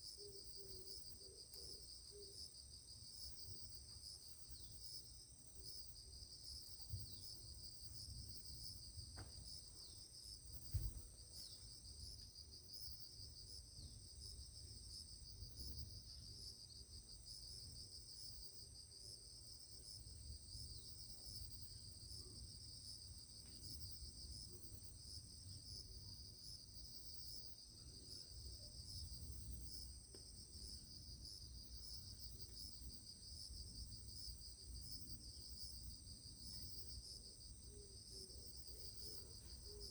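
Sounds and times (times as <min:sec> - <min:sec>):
insect chorus trilling: 0:00.0 - 0:39.9.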